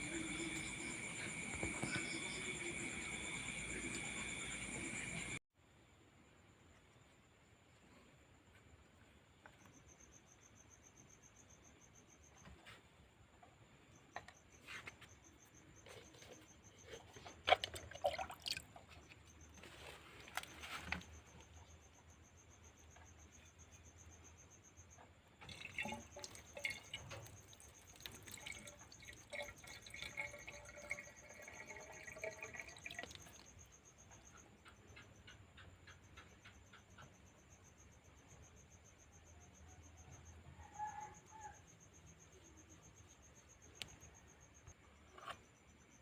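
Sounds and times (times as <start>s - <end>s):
water pouring and dripping: 0.0s - 5.4s, 15.9s - 21.5s, 25.4s - 33.8s
cricket chirping: 0.0s - 46.0s.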